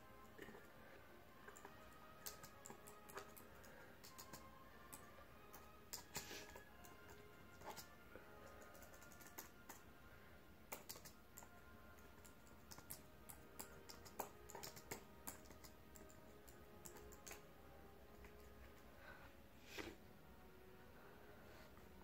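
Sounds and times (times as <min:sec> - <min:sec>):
faint typing on keyboard: 0:01.4 - 0:09.9, 0:10.7 - 0:17.5.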